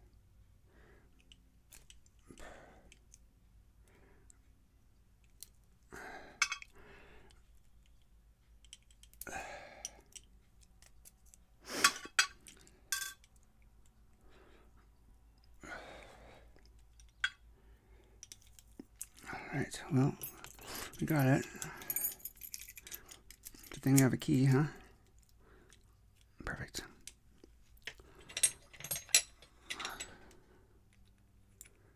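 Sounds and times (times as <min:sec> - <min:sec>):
metallic clicks of lock and tools: 0:08.6 - 0:09.3, 0:27.9 - 0:30.3.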